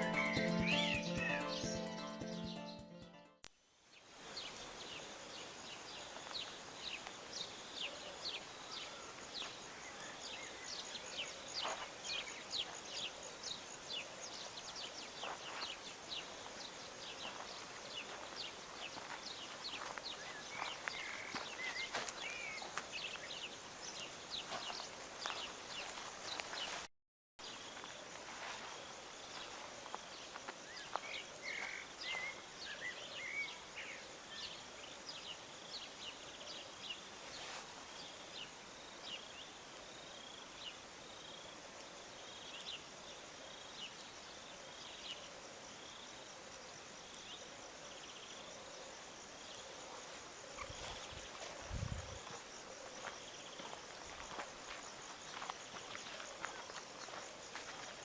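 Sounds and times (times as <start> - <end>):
birds chirping and singing: 0.0 - 2.8
background hiss: 3.4 - 58.0.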